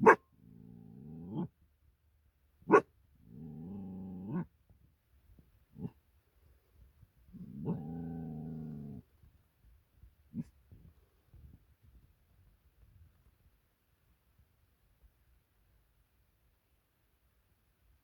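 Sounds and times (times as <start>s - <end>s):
puppy barking sharply: 0.0s - 0.2s, 2.7s - 2.9s
puppy growling: 0.0s - 1.5s, 2.7s - 4.5s, 7.3s - 9.1s.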